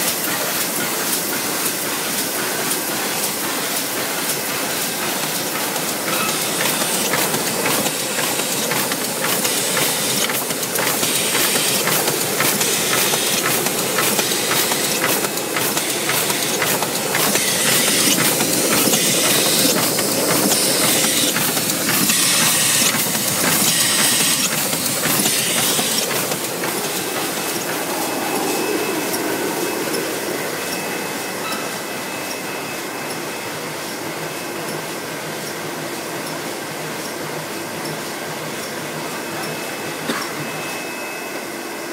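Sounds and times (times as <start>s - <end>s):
book-sewing machine clattering: 6.1s - 26.4s.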